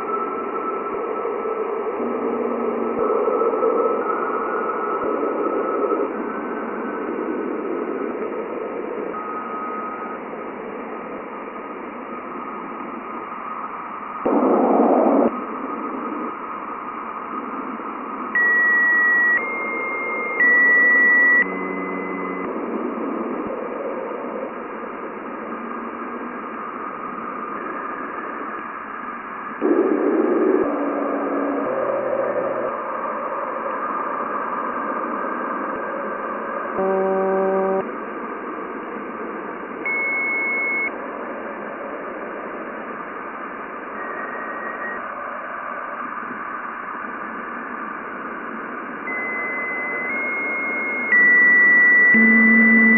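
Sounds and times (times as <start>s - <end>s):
radio static hiss: 14.0s - 16.4s, 18.4s - 25.5s, 27.0s - 33.6s, 36.7s - 37.9s, 42.7s - 45.1s
high beeps: 18.4s - 22.5s, 36.8s - 37.8s, 39.9s - 40.9s, 44.0s - 45.0s, 49.1s - 52.9s
buzzy low tone: 19.5s - 23.5s, 36.8s - 37.9s, 52.1s - 52.9s.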